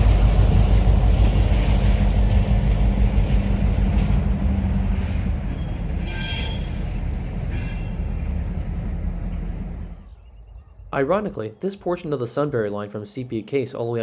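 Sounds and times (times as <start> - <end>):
steel wheels squealing on rail: 0.0 - 2.8, 4.9 - 8.3
freight train diesel rumble: 0.0 - 10.3.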